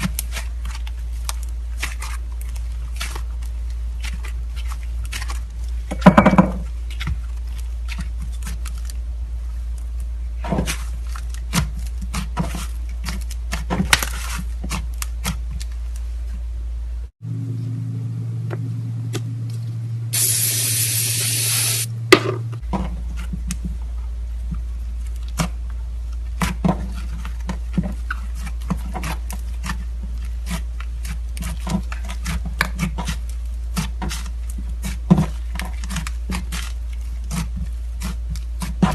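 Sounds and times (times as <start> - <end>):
slime squishing: 0.0 - 6.0, 6.6 - 16.4, 23.1 - 38.9
low hum: 16.4 - 22.8
steady hiss: 20.2 - 21.9.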